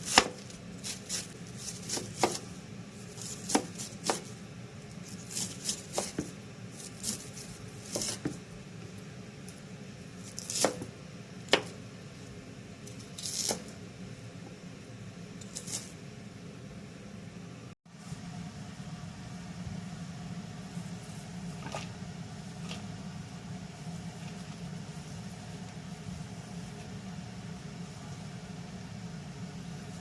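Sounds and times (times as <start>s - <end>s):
knife cutting on cutting board: 0.0s - 2.5s, 3.2s - 4.3s, 5.2s - 8.4s, 13.2s - 13.7s
steady low hum: 0.0s - 30.0s.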